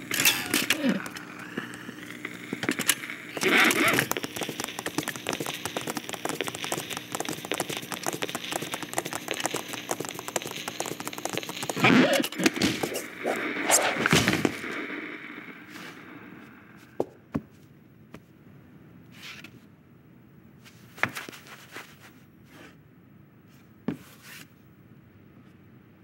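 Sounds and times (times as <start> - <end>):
loud noisy sound: 0.0 - 16.8.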